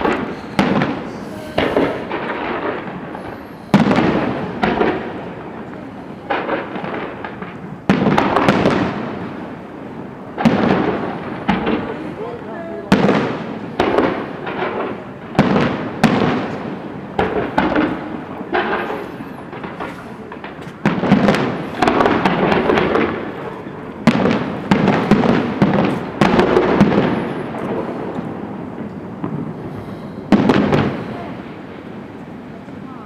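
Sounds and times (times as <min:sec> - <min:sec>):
fireworks bursting with echoing rumble: 0:00.0 - 0:33.0.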